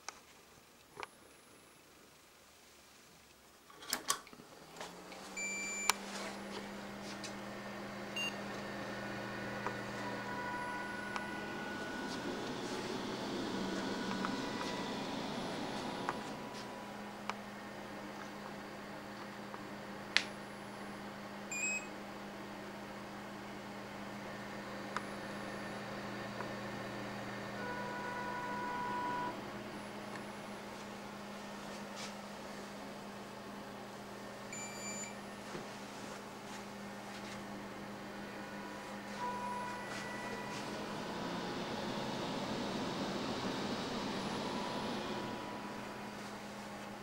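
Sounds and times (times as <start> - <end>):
computer fans humming: 4.5 - 47.0
short electronic beep: 39.2 - 40.6.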